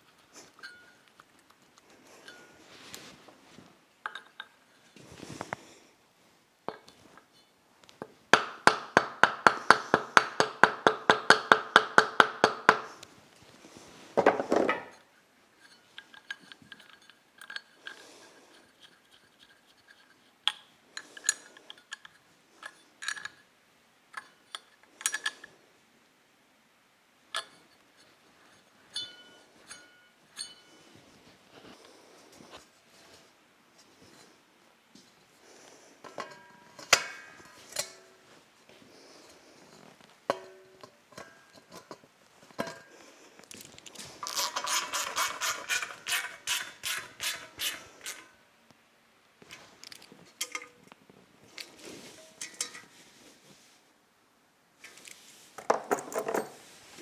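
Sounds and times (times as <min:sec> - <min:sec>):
metal tools clinking: 0:00.4 - 0:01.2, 0:02.2 - 0:02.7, 0:28.9 - 0:30.9, 0:51.6 - 0:53.0
ringing metallic taps: 0:29.0 - 0:30.7
metal scrape: 0:44.0 - 0:48.3.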